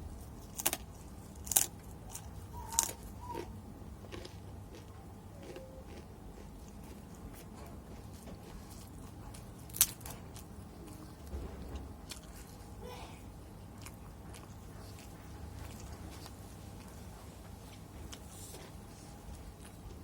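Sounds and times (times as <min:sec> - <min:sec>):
crunchy bite: 0:00.4 - 0:06.5
person chewing food: 0:00.4 - 0:11.4, 0:13.7 - 0:20.0.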